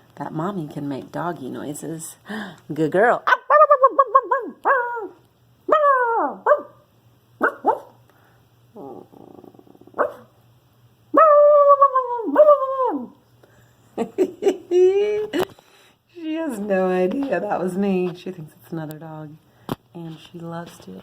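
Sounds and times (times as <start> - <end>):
woman imitating dog barks: 3.2 - 6.8, 11.1 - 13.2.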